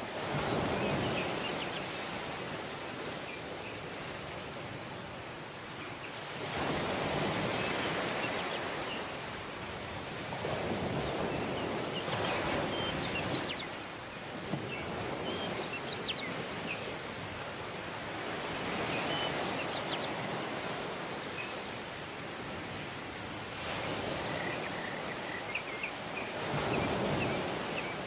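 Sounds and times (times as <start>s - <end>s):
ocean waves washing on shore: 0.0s - 28.0s.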